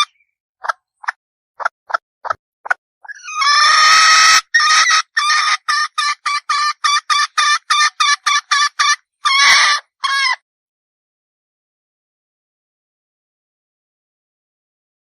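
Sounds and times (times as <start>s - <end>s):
hen clucking and calling: 3.0s - 10.4s.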